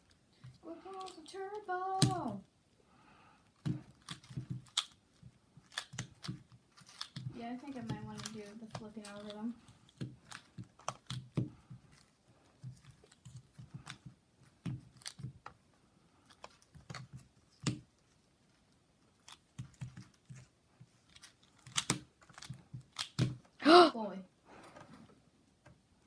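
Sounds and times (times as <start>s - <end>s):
plastic cube layers clicking: 0.0s - 2.5s, 3.6s - 15.6s, 19.1s - 23.5s.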